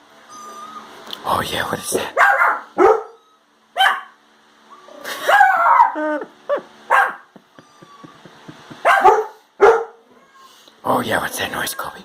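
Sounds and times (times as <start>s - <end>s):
dog barking and whining: 2.1s - 4.2s, 4.8s - 8.2s, 8.8s - 10.1s.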